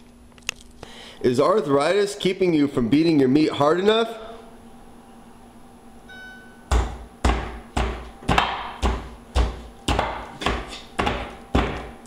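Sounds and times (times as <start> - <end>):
rock pounding meat on board: 6.7 - 12.0.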